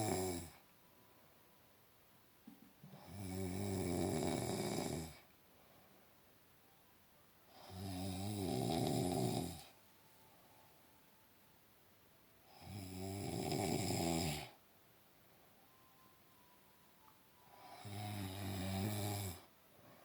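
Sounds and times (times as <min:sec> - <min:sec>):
person snoring loudly: 0:00.0 - 0:00.6, 0:02.9 - 0:05.2, 0:07.5 - 0:09.7, 0:12.5 - 0:14.6, 0:17.6 - 0:19.5.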